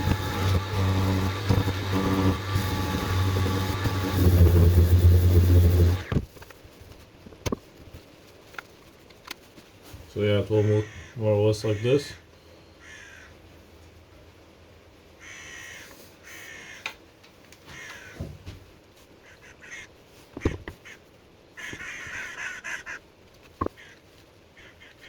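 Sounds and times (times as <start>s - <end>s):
crows cawing: 10.6s - 11.9s, 12.8s - 13.4s, 15.2s - 17.0s, 17.7s - 18.3s, 19.2s - 21.0s, 21.6s - 23.0s, 23.6s - 25.0s.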